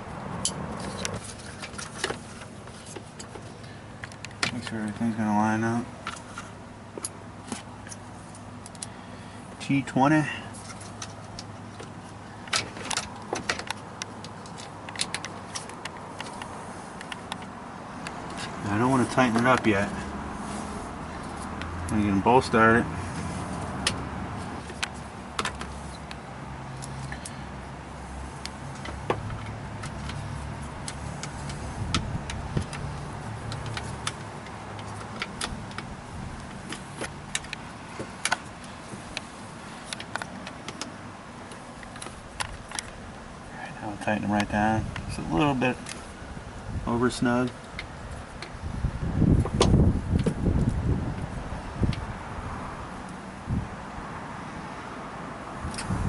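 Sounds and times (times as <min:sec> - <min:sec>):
hand tool clicks and ticks: 0:28.4 - 0:43.0.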